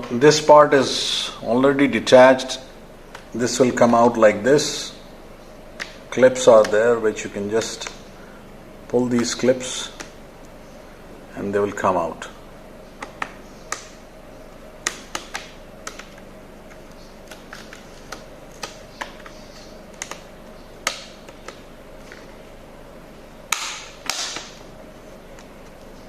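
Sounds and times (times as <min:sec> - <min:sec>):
loud plastic snaps: 0:17.3 - 0:21.6, 0:23.5 - 0:24.6.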